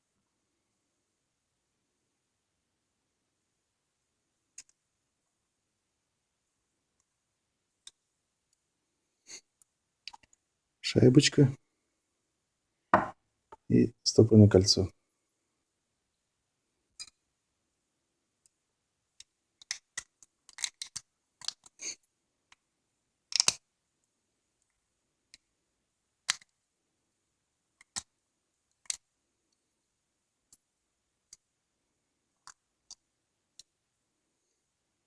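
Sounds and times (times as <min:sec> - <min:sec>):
metal knock: 0:13.0 - 0:13.2
metallic clicks of small parts: 0:17.0 - 0:17.2, 0:19.2 - 0:21.8, 0:23.3 - 0:23.6, 0:26.3 - 0:26.5, 0:27.8 - 0:28.1, 0:28.7 - 0:29.0.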